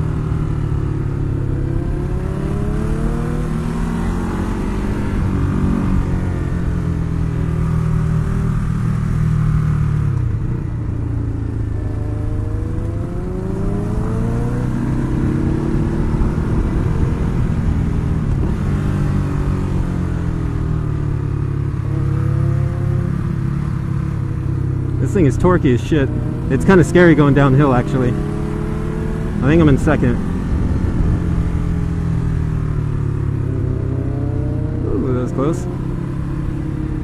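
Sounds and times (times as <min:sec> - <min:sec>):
motorcycle engine revving: 0:00.0 - 0:37.0.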